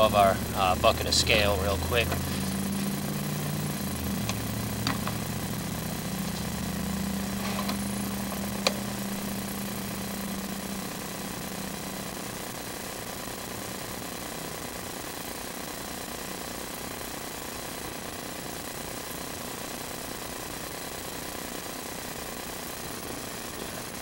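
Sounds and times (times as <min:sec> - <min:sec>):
engine idling: 0:00.0 - 0:24.0.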